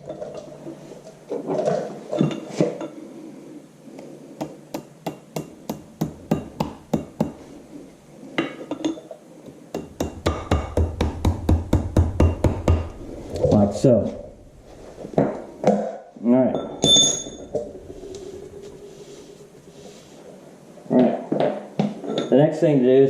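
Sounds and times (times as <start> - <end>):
low hum: 9.7 - 20.9.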